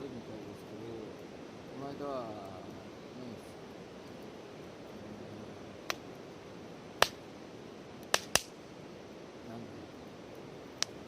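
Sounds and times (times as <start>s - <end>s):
campfire popping and cracking: 5.7s - 9.1s, 10.0s - 11.0s.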